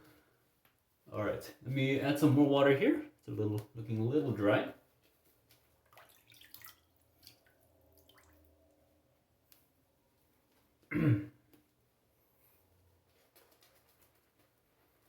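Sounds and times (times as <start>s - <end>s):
water dripping into lather: 5.8s - 8.9s.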